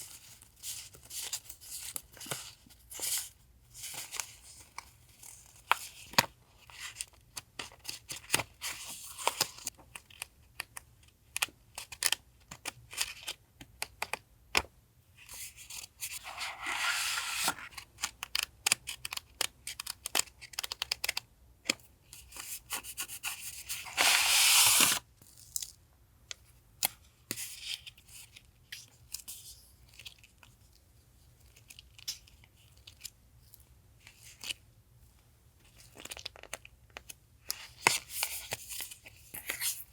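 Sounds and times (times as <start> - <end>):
paper rustling and crinkling: 16.0 - 17.9, 23.0 - 25.0.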